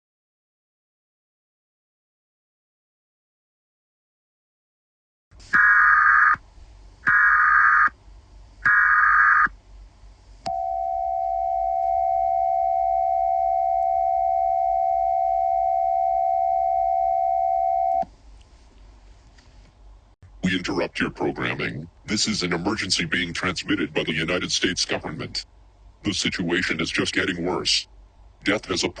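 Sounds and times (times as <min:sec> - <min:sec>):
steady electronic attention tone: 0:10.5 - 0:18.0.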